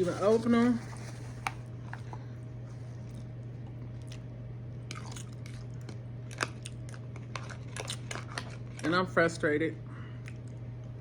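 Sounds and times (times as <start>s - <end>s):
steady low hum: 0.0s - 11.0s
faint chewing: 0.8s - 8.9s.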